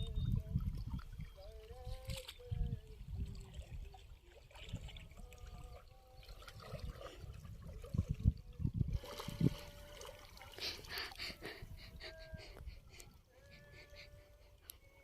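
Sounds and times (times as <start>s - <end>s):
water trickling: 0.2s - 11.1s.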